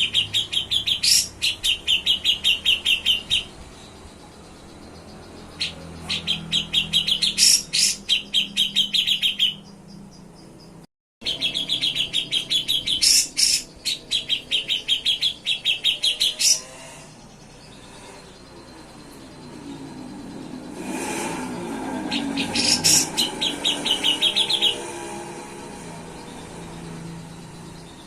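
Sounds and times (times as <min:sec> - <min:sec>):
bird singing rapid chirps: 0:00.0 - 0:28.0.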